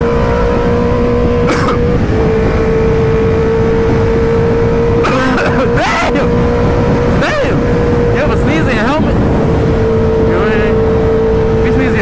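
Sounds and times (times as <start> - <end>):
motorcycle engine running: 0.0 - 12.0
wind and road rumble: 0.0 - 12.0
voice-like sounds: 7.2 - 7.6.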